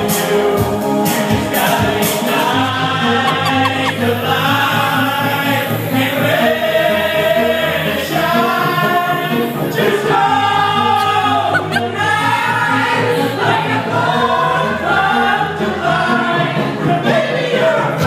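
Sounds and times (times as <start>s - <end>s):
voices singing in harmony: 0.0s - 18.0s
repeating bass line: 3.1s - 5.8s.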